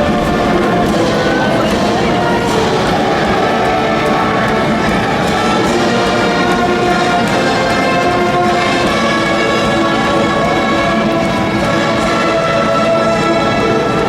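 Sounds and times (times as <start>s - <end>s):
brass band playing: 0.0s - 14.0s.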